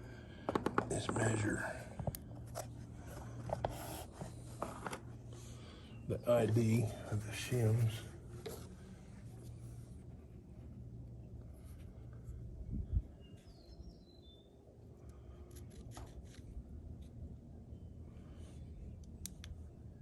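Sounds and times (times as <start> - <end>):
steady low hum: 0.0 - 20.0
small clicks and handling noises: 15.0 - 17.2, 18.9 - 19.7.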